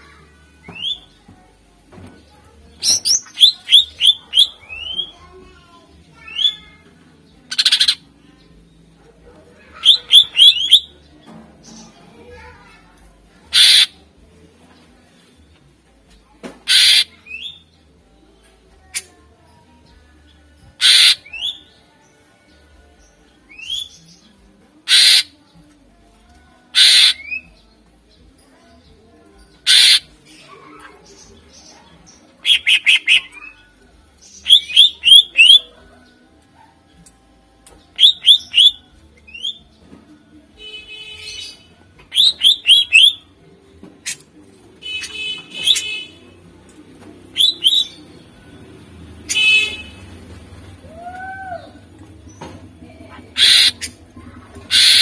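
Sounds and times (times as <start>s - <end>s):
sharp chirped bird notes: 0.7s - 1.2s, 2.8s - 5.2s, 7.5s - 8.0s, 9.8s - 10.9s, 13.5s - 14.0s, 16.6s - 17.7s, 20.8s - 21.7s, 24.9s - 25.3s, 26.7s - 27.6s, 29.6s - 35.7s, 37.9s - 39.7s, 40.6s - 43.3s, 44.0s - 46.2s, 47.3s - 48.3s, 53.3s - 54.1s, 54.7s - 55.0s
harsh rasping bird calls: 2.8s - 5.2s, 7.5s - 8.0s, 9.7s - 10.9s, 13.5s - 14.1s, 16.6s - 17.7s, 20.8s - 21.8s, 24.8s - 25.4s, 26.7s - 27.6s, 29.6s - 33.6s, 34.2s - 35.7s, 37.9s - 39.7s, 40.6s - 43.3s, 44.0s - 46.4s, 47.3s - 48.3s, 49.1s - 50.1s, 53.2s - 55.0s
buzzy bird trills: 16.7s - 17.5s, 26.8s - 27.4s, 29.6s - 30.1s, 53.3s - 54.0s, 54.7s - 55.0s.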